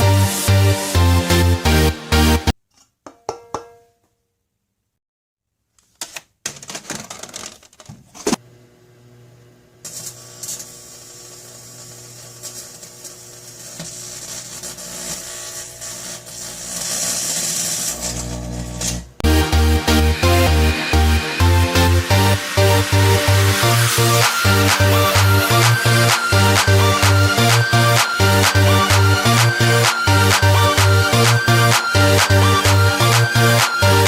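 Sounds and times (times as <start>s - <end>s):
microwave humming: 8.4s - 13.9s
foil arcing crackle: 9.9s - 18.4s.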